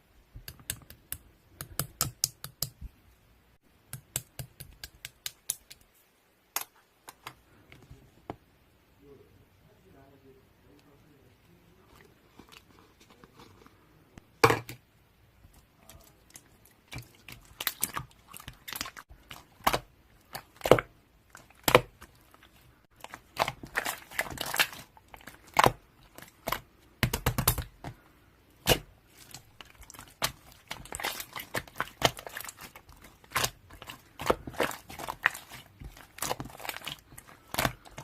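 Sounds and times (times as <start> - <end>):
crinkling and crackling: 11.7 - 14.2, 28.7 - 38.0.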